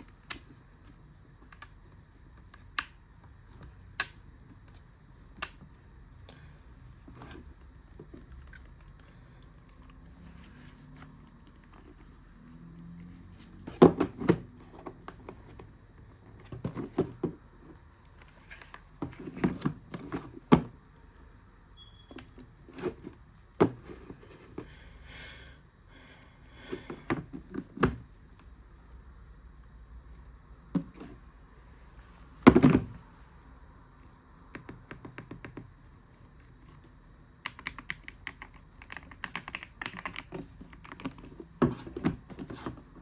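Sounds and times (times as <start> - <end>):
keyboard clicks and knocks: 34.5 - 35.7, 37.4 - 41.4.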